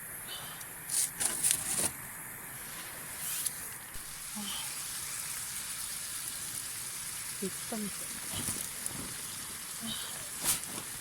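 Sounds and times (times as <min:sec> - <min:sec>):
meatballs sizzling: 0:04.0 - 0:11.0.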